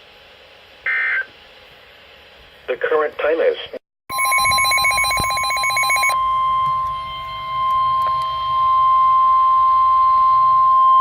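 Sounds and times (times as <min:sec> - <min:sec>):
buzzing digital header data: 0:04.1 - 0:06.2
steady high-pitched alarm tone: 0:04.1 - 0:11.0.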